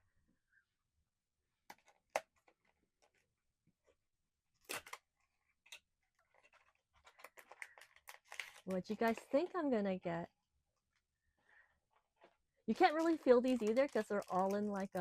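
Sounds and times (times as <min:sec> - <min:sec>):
packaging rustle: 0:04.7 - 0:09.5, 0:12.2 - 0:15.0.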